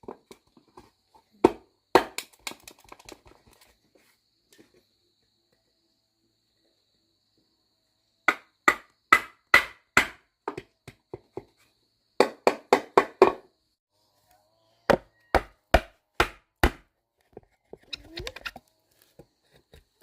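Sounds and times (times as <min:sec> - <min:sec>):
hand tool chopping wood: 0:08.3 - 0:11.2, 0:14.9 - 0:18.5.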